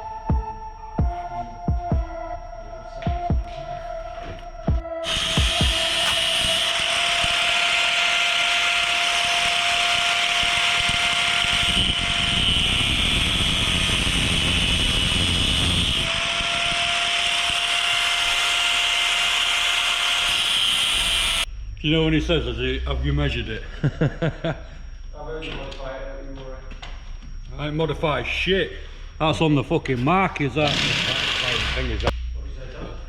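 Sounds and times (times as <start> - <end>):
angle grinder grinding metal: 5.0 - 21.5, 30.5 - 32.1.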